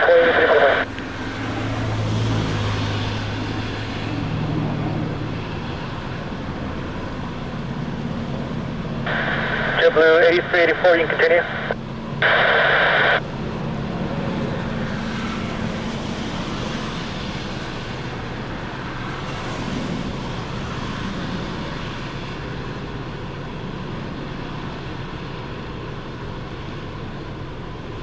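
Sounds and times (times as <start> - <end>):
radio static: 0.0 - 1.0, 9.1 - 13.3
jet engines roaring: 0.0 - 28.0.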